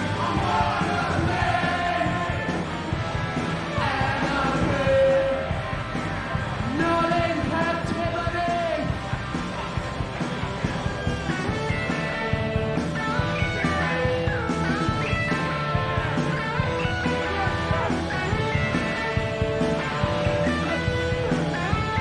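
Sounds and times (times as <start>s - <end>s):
punk rock band playing: 0.0s - 22.0s.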